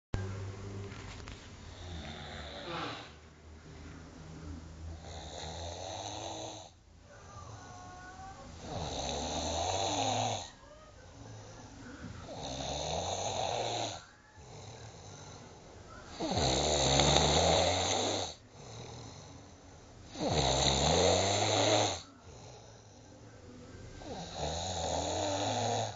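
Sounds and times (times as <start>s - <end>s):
person snoring: 1.7s - 3.2s, 4.9s - 6.8s, 8.6s - 10.6s, 12.2s - 23.1s, 24.0s - 25.9s.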